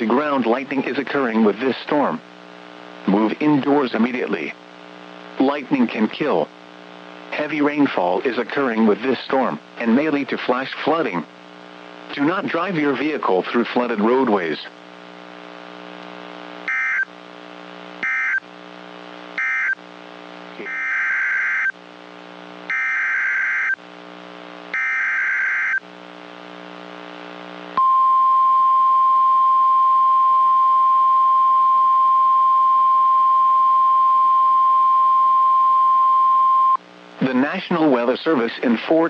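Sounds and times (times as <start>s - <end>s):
steady warning alarm tone: 16.7s - 17.1s, 18.0s - 18.4s, 19.4s - 19.8s, 20.6s - 21.8s, 22.7s - 23.8s, 24.7s - 25.8s
digital data bursts: 18.0s - 18.4s, 19.4s - 19.8s, 20.6s - 21.7s, 22.7s - 23.8s, 24.7s - 25.8s.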